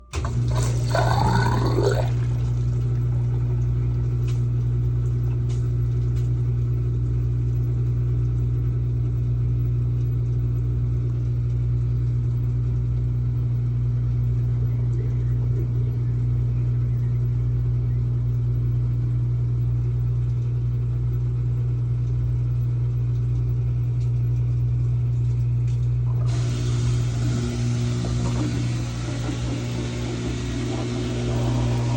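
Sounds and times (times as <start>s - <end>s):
drain pump humming: 0.0s - 31.9s
water overflowing drain: 0.1s - 5.4s, 26.1s - 31.9s.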